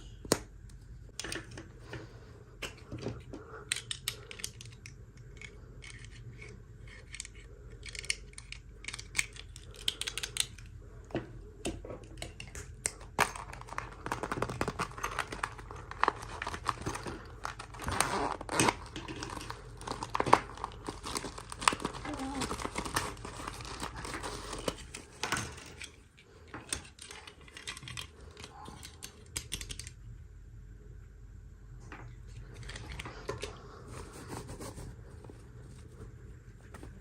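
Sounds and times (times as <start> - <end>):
packaging clicks and snips: 3.4 - 10.8, 11.6 - 26.0, 26.6 - 30.0
packaging handling noise: 12.2 - 29.0.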